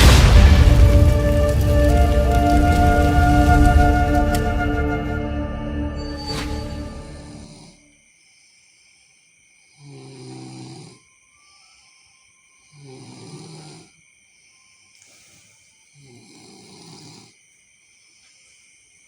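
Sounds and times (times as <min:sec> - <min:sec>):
person snoring: 0:07.2 - 0:07.8, 0:09.8 - 0:11.0, 0:12.7 - 0:14.0, 0:16.0 - 0:17.4.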